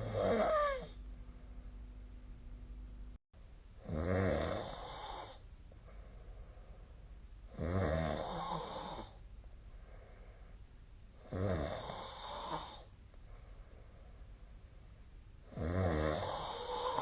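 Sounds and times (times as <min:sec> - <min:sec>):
person snoring: 0:00.0 - 0:01.0, 0:03.8 - 0:05.4, 0:07.5 - 0:09.2, 0:11.2 - 0:12.9, 0:15.5 - 0:17.0
quiet breathing: 0:00.0 - 0:01.8, 0:04.7 - 0:07.2, 0:08.2 - 0:11.2, 0:11.8 - 0:15.1, 0:16.1 - 0:17.0.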